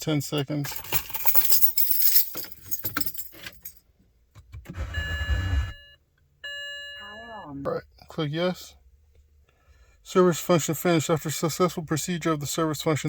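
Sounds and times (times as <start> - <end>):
car keys jangling: 0.4 - 3.8
electronic beep tones: 4.9 - 7.5.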